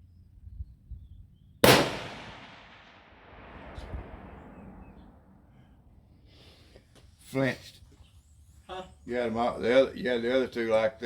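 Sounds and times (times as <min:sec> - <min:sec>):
rifle shot with rolling echo: 0:01.6 - 0:05.5.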